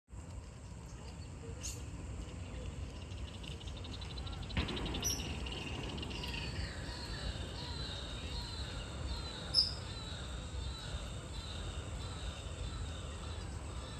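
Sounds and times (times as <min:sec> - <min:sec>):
low rumble: 0:00.2 - 0:13.9
birds chirping and calling: 0:00.9 - 0:13.9
bird trill: 0:02.9 - 0:13.9
falling whistles: 0:04.6 - 0:10.2.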